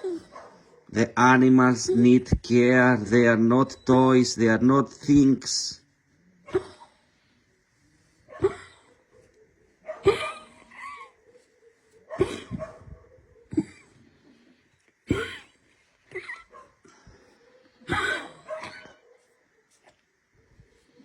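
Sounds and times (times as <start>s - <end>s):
dog coughing: 0.0s - 0.7s, 6.4s - 7.0s, 8.3s - 9.1s, 9.9s - 11.2s, 12.1s - 14.1s, 15.0s - 16.8s, 17.8s - 19.1s.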